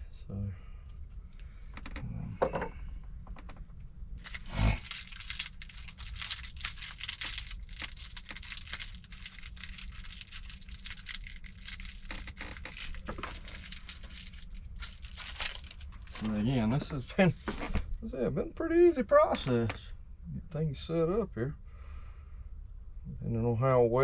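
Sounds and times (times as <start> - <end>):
faint low hum: 0.0 - 24.0
crinkling and rustling: 1.2 - 18.1.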